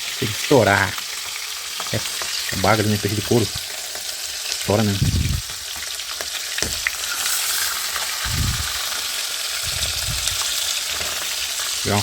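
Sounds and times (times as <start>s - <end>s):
fish sizzling in hot oil: 0.0s - 12.0s
oil spattering pops: 6.6s - 7.0s.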